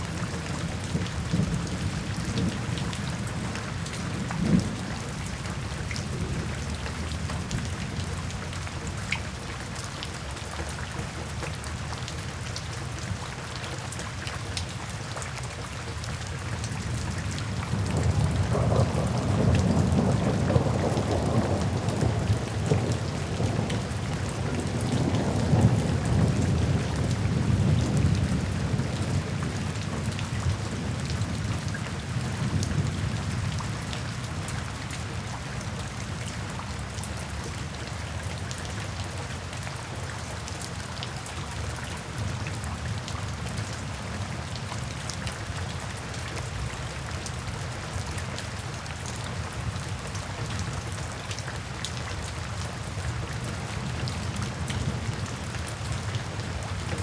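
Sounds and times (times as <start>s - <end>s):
steady rain: 0.0s - 57.0s
thunder rumble: 17.7s - 29.5s.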